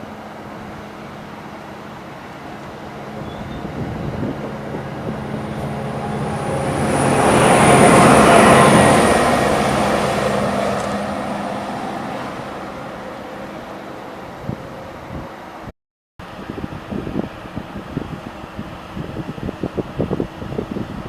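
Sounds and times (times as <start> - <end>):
train passing: 0.0 - 15.7.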